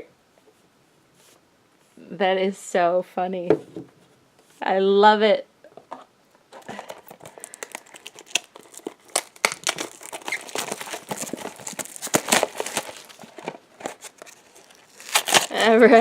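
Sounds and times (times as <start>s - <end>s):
foil bag crinkling and tearing: 6.6s - 16.0s.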